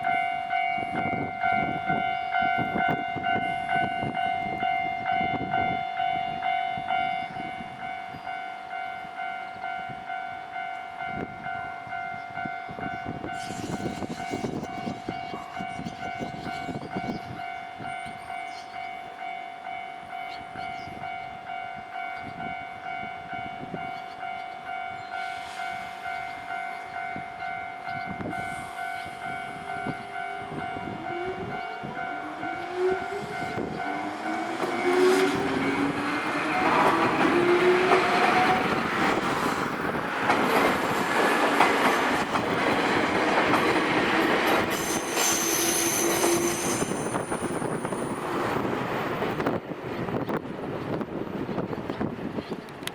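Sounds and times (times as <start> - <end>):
level crossing warning bell: 0.0 - 48.7
high squeal: 13.3 - 17.0, 44.7 - 48.4
train wheels clattering on rails: 27.4 - 51.1
train motor whine: 28.2 - 48.7.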